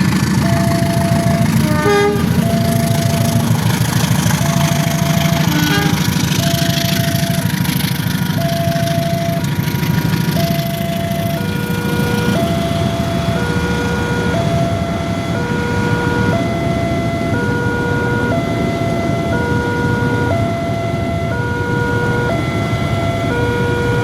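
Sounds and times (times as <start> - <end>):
two-tone train horn: 0.4 - 7.6.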